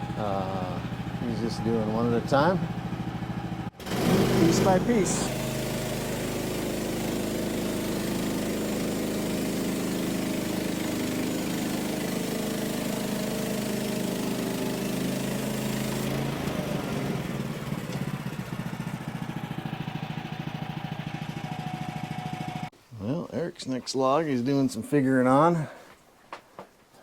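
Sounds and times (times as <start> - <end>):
gas engine running: 0.0 - 22.7
saw blade cutting log: 3.8 - 18.6.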